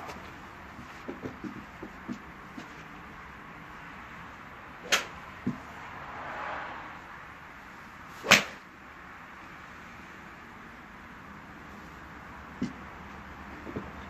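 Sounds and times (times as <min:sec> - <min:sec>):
golf club striking ball: 0:04.8 - 0:05.2, 0:08.2 - 0:08.6.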